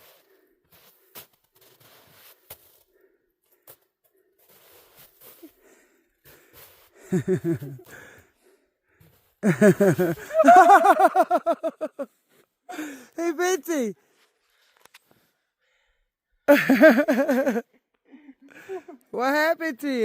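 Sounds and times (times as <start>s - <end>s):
footsteps in snow: 0.0s - 3.8s, 4.4s - 5.6s
person calling out loudly: 10.3s - 11.2s.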